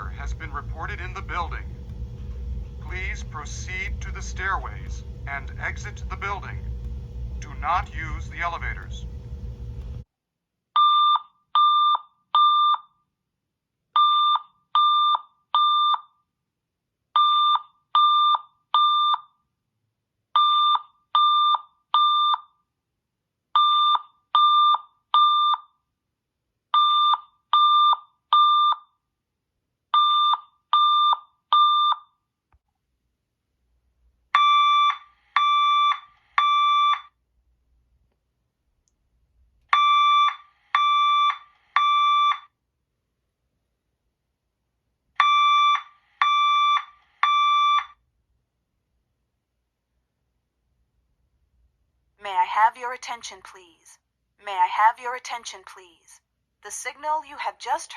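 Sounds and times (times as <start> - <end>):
fire alarm beeps: 10.8 - 13.0, 14.0 - 16.2, 17.2 - 19.4, 20.4 - 22.6, 23.6 - 25.8, 26.8 - 29.0, 30.0 - 32.2, 34.4 - 37.1, 39.8 - 42.5, 45.2 - 48.0.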